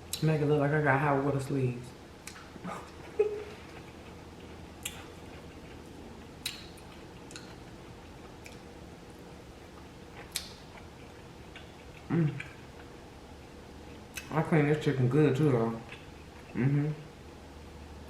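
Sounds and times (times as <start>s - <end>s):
person chewing with wet smacks: 2.2s - 13.0s, 13.9s - 14.4s, 15.8s - 16.7s.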